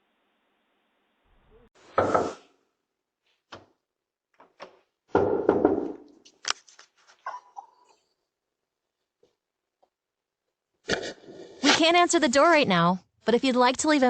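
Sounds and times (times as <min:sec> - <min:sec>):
banging on a door: 0:05.2 - 0:06.0.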